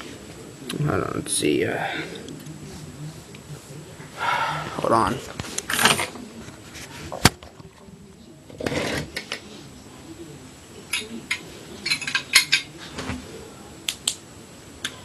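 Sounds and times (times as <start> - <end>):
metal parts clinking and clicking: 10.9 - 12.7.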